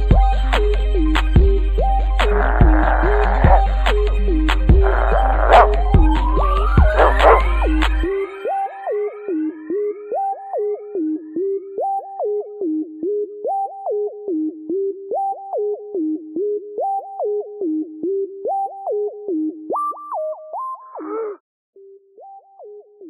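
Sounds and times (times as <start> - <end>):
hip-hop instrumental beat: 0.0 - 10.9.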